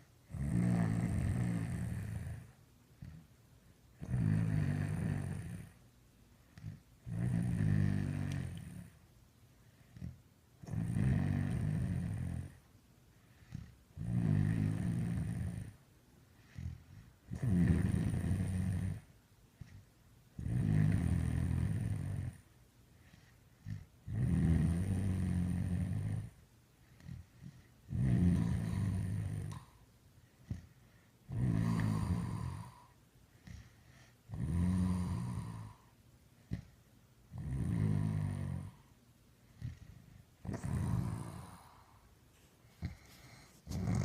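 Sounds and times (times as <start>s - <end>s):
person snoring: 0.3s - 3.2s, 4.0s - 5.8s, 6.6s - 9.0s, 9.9s - 12.6s, 13.4s - 15.8s, 16.4s - 19.8s, 20.4s - 22.4s, 23.6s - 26.3s, 27.0s - 29.7s, 31.3s - 33.7s, 34.3s - 35.9s, 37.3s - 38.8s, 39.6s - 42.1s, 42.8s - 44.0s.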